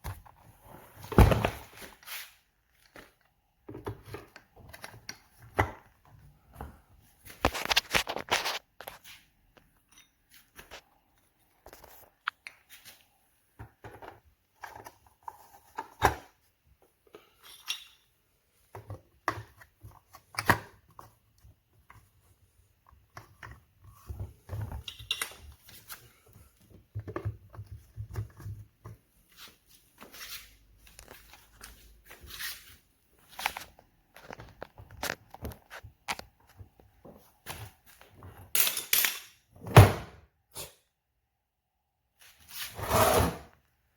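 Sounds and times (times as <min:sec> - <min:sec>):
clicks and knocks of handling: 0:02.7 - 0:13.0, 0:33.3 - 0:39.4.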